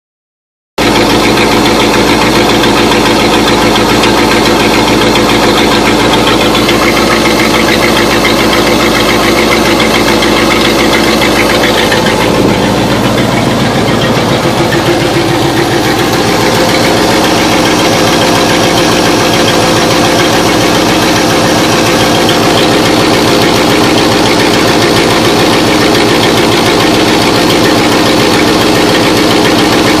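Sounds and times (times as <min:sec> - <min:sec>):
car engine idling: 0:00.8 - 0:30.0.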